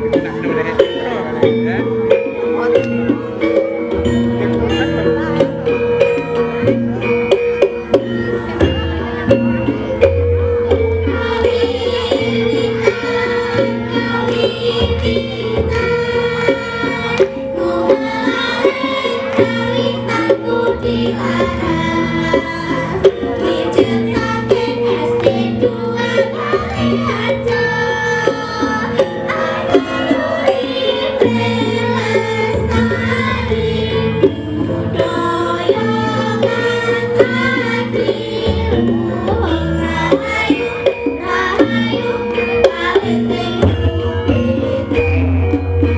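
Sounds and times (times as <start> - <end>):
metallophones and gongs ringing: 0.0 - 45.9
voices singing: 0.0 - 45.9.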